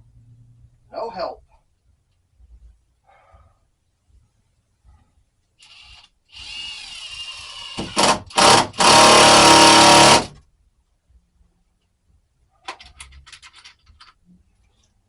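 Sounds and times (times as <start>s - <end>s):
power drill driving screw: 5.6s - 10.4s.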